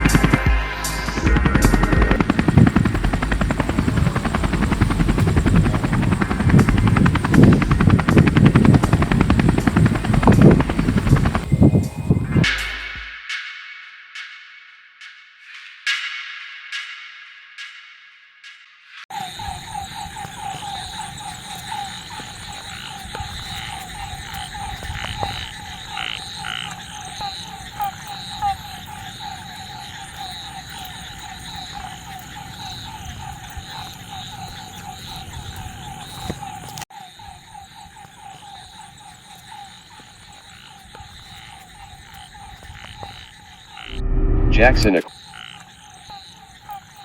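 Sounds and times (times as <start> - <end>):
frogs croaking: 2.2 - 12.4, 19.1 - 44.1, 44.9 - 47.0
high-pitched chirring: 2.2 - 12.4, 43.8 - 45.1.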